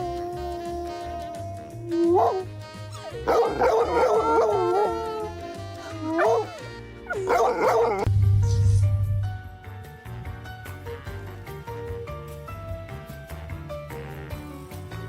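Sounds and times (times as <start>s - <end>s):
dog howling and yipping: 0.0s - 8.1s
background music: 0.0s - 15.0s.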